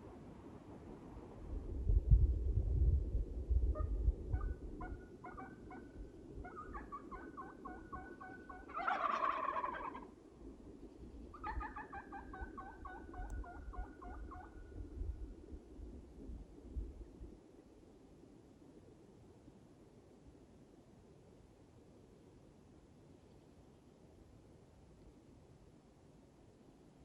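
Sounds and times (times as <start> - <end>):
wild turkeys calling: 3.8 - 10.1, 11.3 - 14.7.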